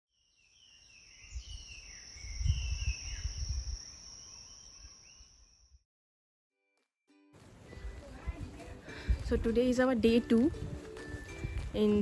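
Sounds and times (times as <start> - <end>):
birds chirping: 0.2 - 5.7
insects droning: 0.6 - 5.8
wind rumbling on microphone: 1.2 - 4.0, 7.7 - 12.0.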